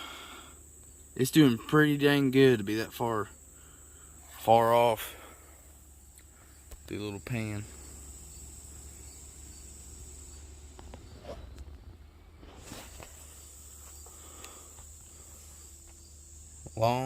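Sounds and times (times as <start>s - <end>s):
crickets chirring: 0.0s - 17.0s
faint rustles: 3.4s - 16.2s.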